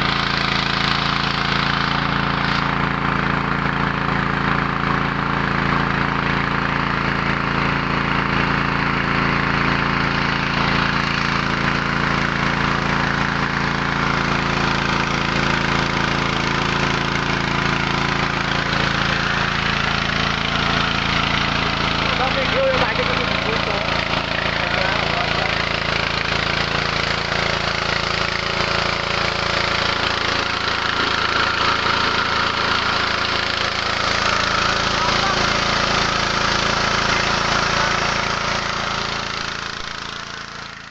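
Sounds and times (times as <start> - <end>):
small petrol engine running: 0.0 - 40.9
rice huller rushing noise: 12.6 - 40.7.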